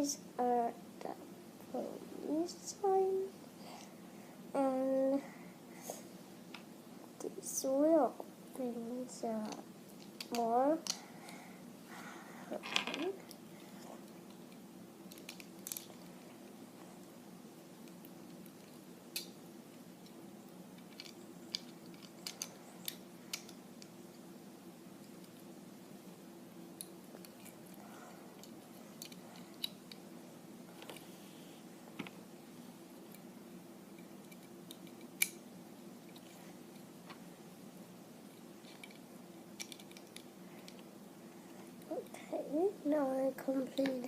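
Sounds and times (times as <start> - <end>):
faint steady hum: 0.0 - 44.0
plastic pieces clicking: 9.4 - 11.0, 15.1 - 16.0, 20.8 - 23.6, 28.4 - 30.0, 39.6 - 40.8
plastic bricks clicking together: 20.8 - 23.6, 39.6 - 40.8.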